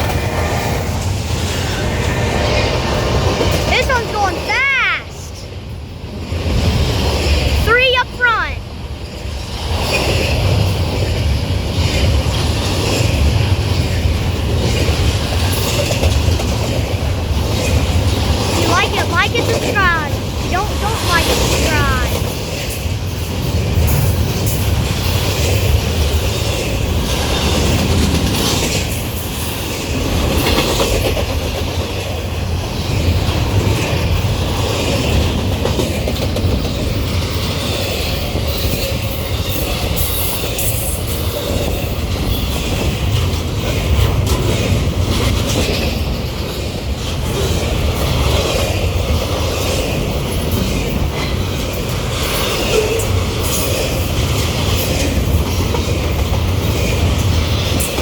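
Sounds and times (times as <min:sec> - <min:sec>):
freight train rumbling past: 0:00.0 - 0:58.0
wheels clicking over rail joints: 0:09.0 - 0:18.7, 0:21.3 - 0:58.0.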